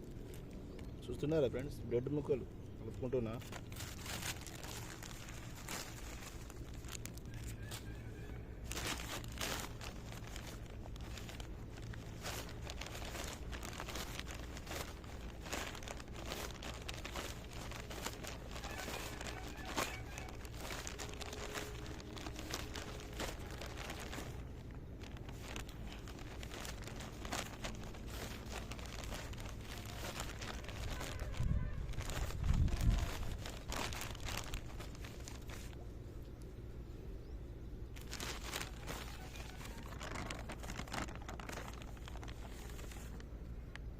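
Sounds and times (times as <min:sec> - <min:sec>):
hands crumbling bread: 0:08.7 - 0:36.4.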